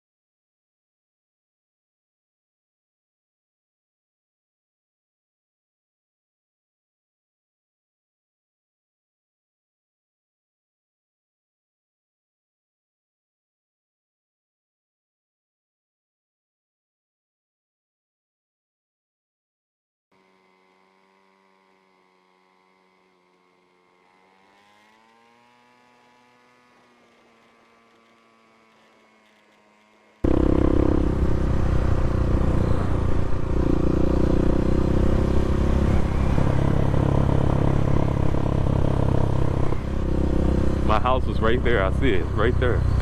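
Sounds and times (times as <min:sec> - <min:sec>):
dirt bike engine running: 0:20.1 - 0:43.0.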